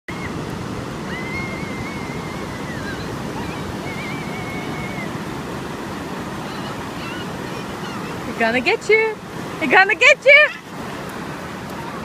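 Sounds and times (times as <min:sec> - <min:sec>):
wind on microphone: 0:00.1 - 0:09.7
surf washing on beach: 0:00.1 - 0:12.0.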